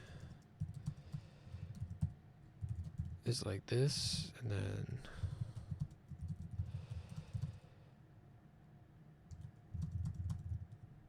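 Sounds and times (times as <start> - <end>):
typing on computer keyboard: 0.0 - 3.2, 5.2 - 7.6, 9.3 - 10.9.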